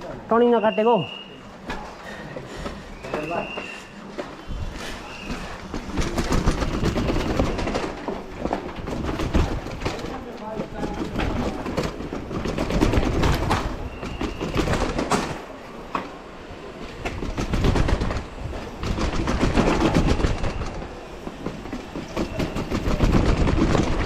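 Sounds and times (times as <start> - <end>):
mountain bike rattling over rough ground: 5.7 - 15.2.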